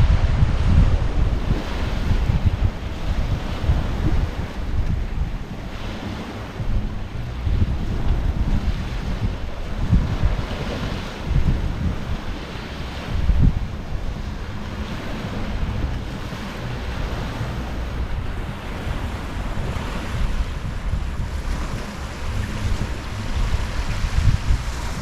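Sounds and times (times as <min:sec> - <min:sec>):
ocean waves lapping on beach: 0:00.0 - 0:25.0
wind buffeting microphone: 0:00.0 - 0:25.0.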